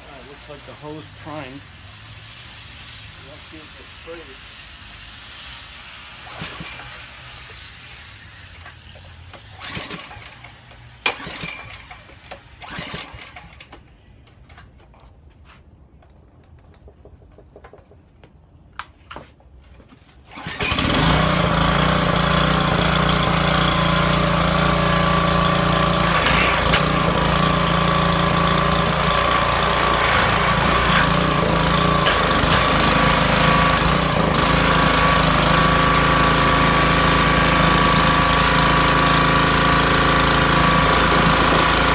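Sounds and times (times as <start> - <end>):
pressure washer engine running: 0.0 - 8.2, 20.4 - 41.9.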